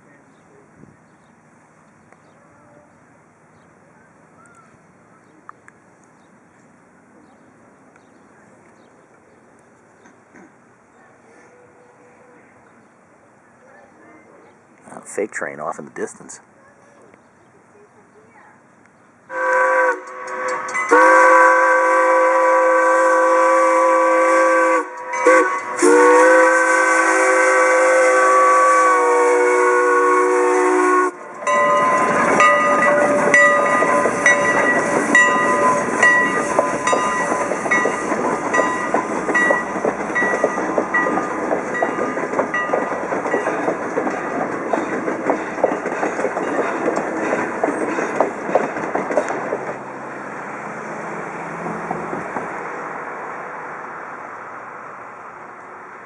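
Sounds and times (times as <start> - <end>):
train exhaust and wheels beat: 18.8 - 56.0
steam locomotive chime whistle: 19.3 - 44.4.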